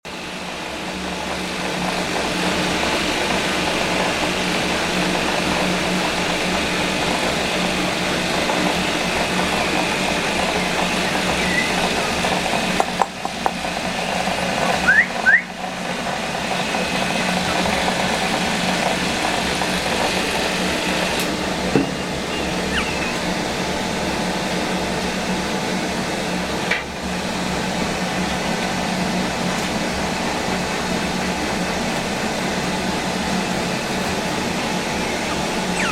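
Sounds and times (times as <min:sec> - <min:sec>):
air conditioner hum: 0:02.0 - 0:35.9
puppy squeaking: 0:11.3 - 0:11.8, 0:21.8 - 0:23.4, 0:34.9 - 0:35.9
light knocks: 0:21.7 - 0:22.1.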